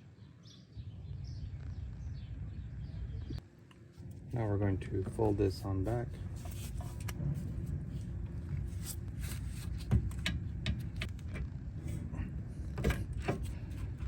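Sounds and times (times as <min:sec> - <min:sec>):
steady low hum: 0:00.0 - 0:14.0
brake caliper clicks and knocks: 0:09.4 - 0:11.5.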